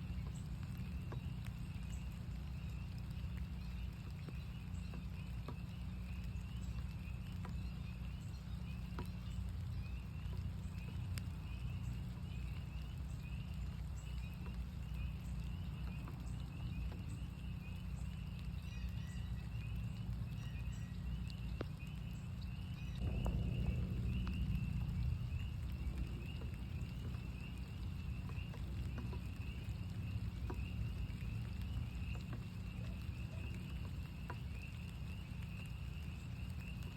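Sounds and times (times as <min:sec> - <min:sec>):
frogs peeping in chorus: 0:00.0 - 0:36.9
rain drips: 0:00.0 - 0:36.9
steady low rumble: 0:00.0 - 0:36.9
rush of noise: 0:23.0 - 0:29.2.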